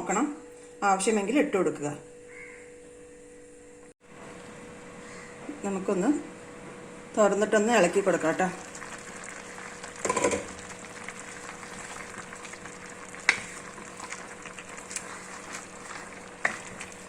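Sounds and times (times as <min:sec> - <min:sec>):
food sizzling in a pot: 0:07.8 - 0:17.0
spoon stirring and knocking pot: 0:10.0 - 0:10.6, 0:13.2 - 0:17.0.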